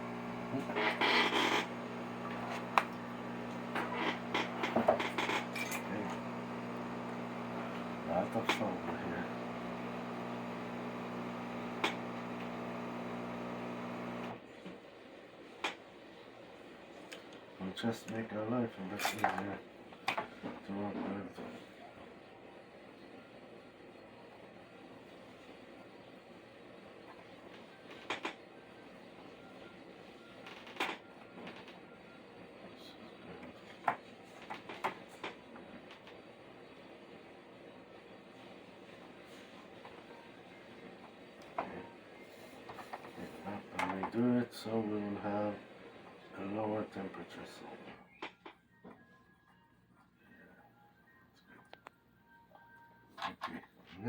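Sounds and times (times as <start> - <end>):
electrical hum: 0.0 - 14.6.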